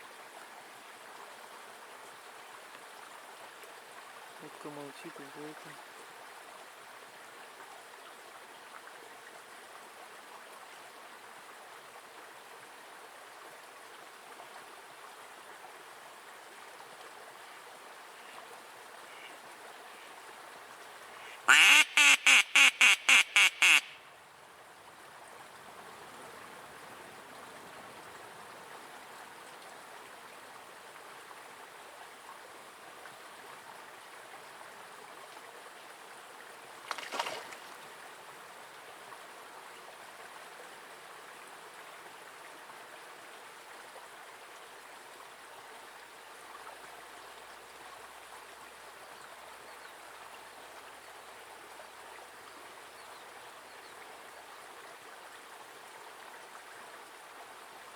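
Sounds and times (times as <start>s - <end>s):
duck quacking: 21.2s - 24.0s.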